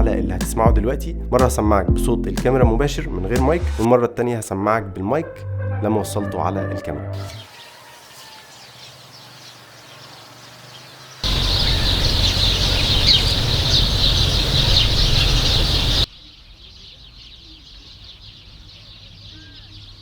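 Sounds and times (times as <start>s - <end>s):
birds chirping: 7.2s - 20.0s
low hum: 11.2s - 16.1s.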